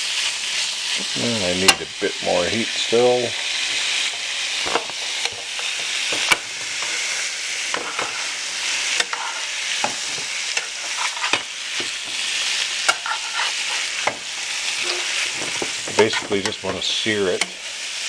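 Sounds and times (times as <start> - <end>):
meat sizzling in a pan: 0.0 - 18.0
utensil scraping a pan: 4.6 - 17.6.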